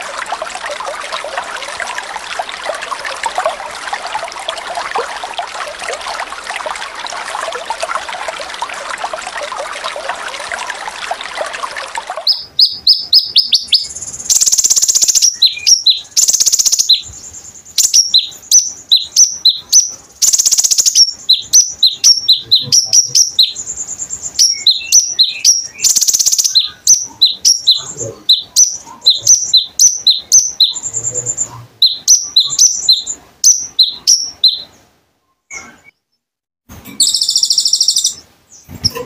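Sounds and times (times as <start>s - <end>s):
songbird singing high chirps: 12.2s - 36.0s, 37.0s - 39.0s.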